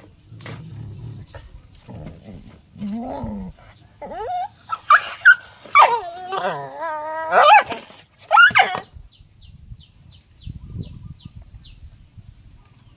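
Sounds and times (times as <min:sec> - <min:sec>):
animal whining: 0:00.4 - 0:08.9.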